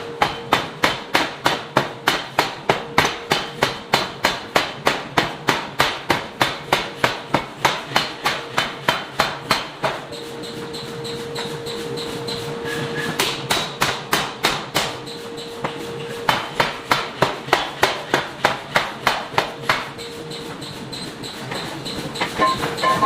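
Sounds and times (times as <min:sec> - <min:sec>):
air hammer pounding metal: 0:00.0 - 0:23.0
machine hum: 0:21.8 - 0:23.0.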